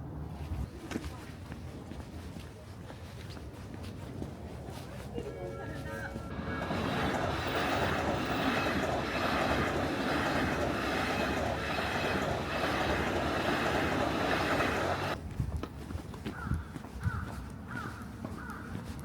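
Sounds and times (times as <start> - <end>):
passing vehicle rumble: 6.3 - 15.2.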